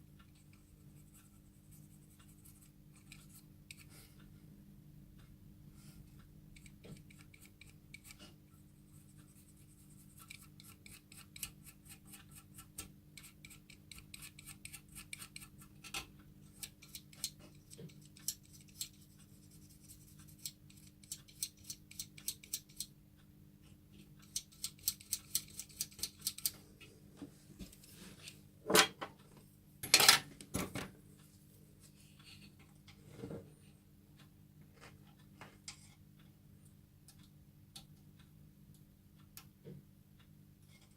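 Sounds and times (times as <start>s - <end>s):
low steady hum: 0.0s - 21.2s.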